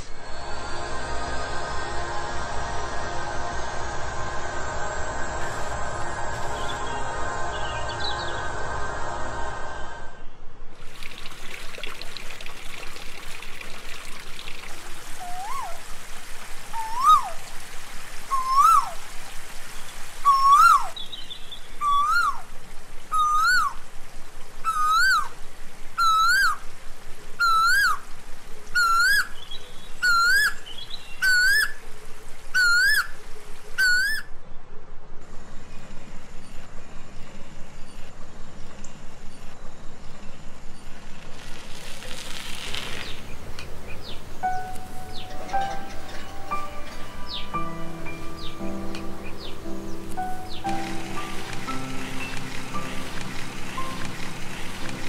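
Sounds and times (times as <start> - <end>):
steady pulsing background: 0.0 - 10.8, 43.8 - 55.0
bird calling sliding notes: 15.0 - 17.6, 18.2 - 19.2, 20.1 - 21.0, 21.8 - 22.5, 23.1 - 23.8, 24.6 - 25.4, 26.0 - 26.6, 27.4 - 28.1, 28.7 - 29.4, 30.0 - 31.8, 32.5 - 33.2, 33.8 - 34.4, 42.8 - 55.0.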